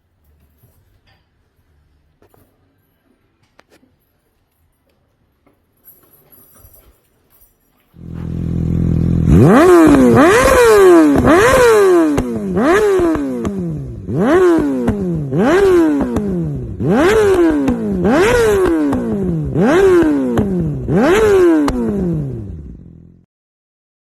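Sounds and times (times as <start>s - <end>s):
motorcycle engine revving: 8.0s - 23.3s.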